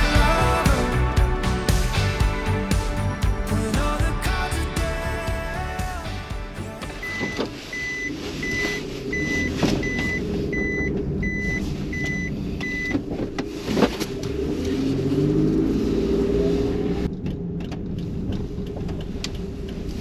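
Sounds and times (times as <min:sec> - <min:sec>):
electronic warning beeps: 0:07.0 - 0:13.0.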